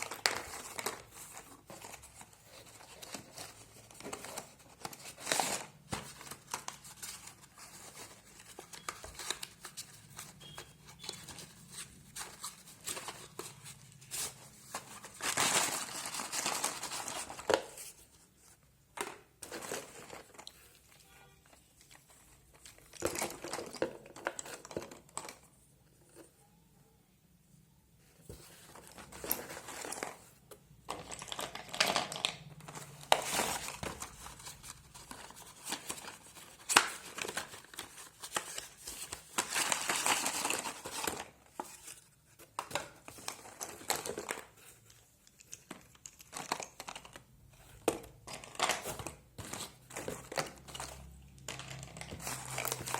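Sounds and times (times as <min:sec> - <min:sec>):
packaging crinkling and tearing: 0:00.0 - 0:18.0, 0:30.9 - 0:52.9
packaging rustling: 0:00.0 - 0:25.5, 0:28.2 - 0:52.9.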